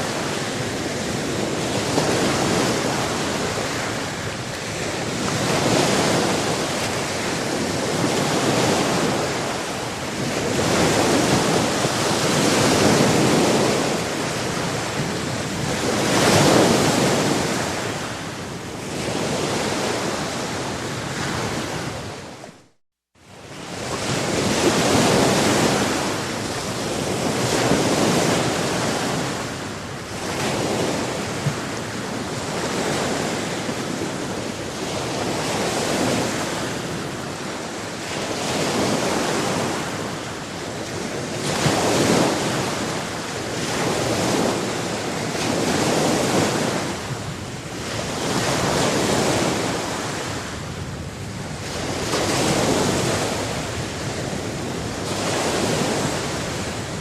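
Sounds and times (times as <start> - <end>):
sea waves breaking on shore: 0.0 - 57.0.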